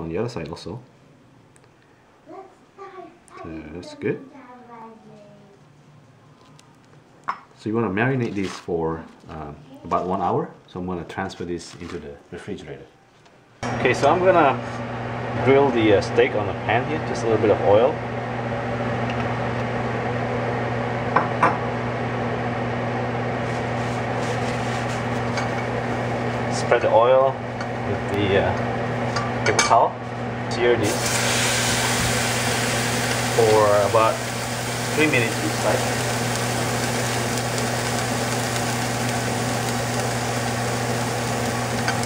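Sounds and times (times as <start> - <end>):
mechanical hum with whir: 10.4 - 42.0
steak sizzling in a pan: 30.8 - 42.0.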